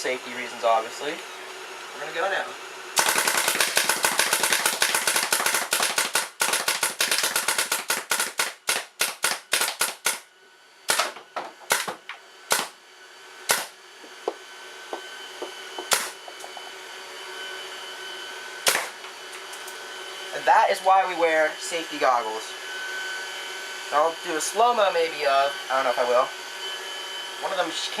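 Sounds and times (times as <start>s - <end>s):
paintball marker firing rapidly: 3.0s - 10.2s.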